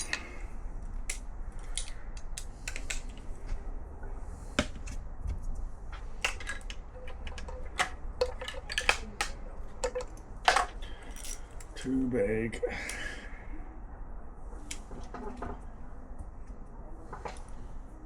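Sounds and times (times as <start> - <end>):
metal tools clinking: 0.0 - 0.4, 6.0 - 11.8.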